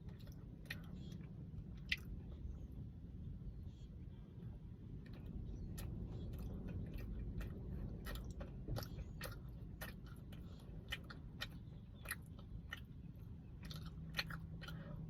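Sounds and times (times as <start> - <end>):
person chewing cookie: 0.0 - 2.6, 4.9 - 15.0
low steady rumble: 0.0 - 15.0.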